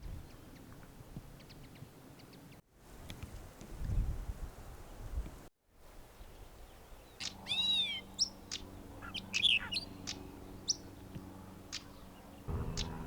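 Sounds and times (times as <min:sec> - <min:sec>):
faint low hum: 0:09.9 - 0:13.0.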